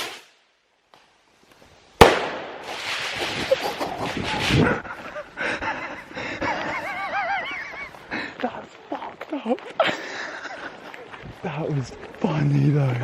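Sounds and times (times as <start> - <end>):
firework rushing and crackle: 0.0 - 0.5, 1.5 - 4.9
firework rocket bang: 2.0 - 4.6.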